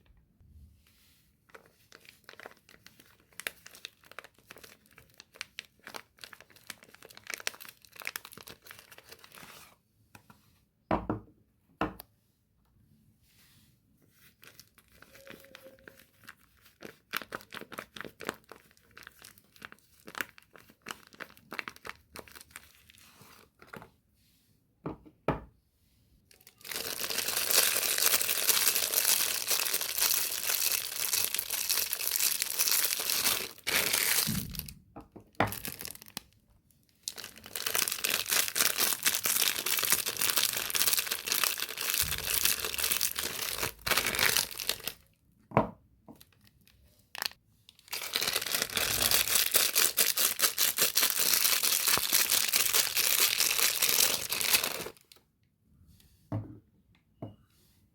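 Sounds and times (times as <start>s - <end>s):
wrapper crinkling and tearing: 1.5s - 9.8s, 14.3s - 23.8s, 26.3s - 34.7s, 35.5s - 45.1s, 46.2s - 55.2s.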